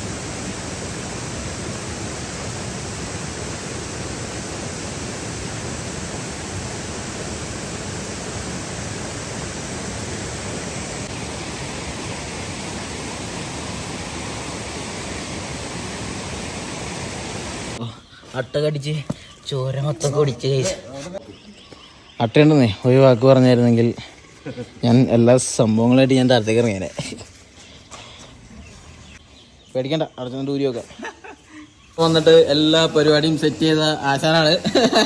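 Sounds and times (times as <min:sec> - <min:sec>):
rushing water: 0:00.0 - 0:17.8, 0:32.0 - 0:35.0.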